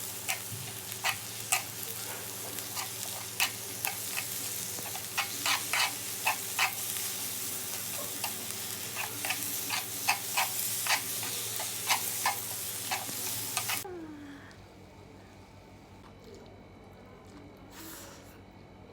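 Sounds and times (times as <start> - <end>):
pork sizzling on a grill: 0.0 - 13.9.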